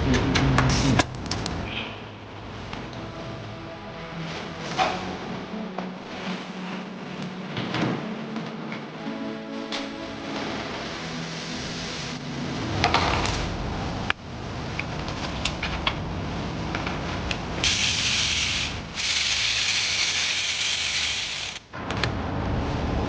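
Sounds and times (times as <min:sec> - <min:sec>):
long steady hiss: 0:17.6 - 0:21.6.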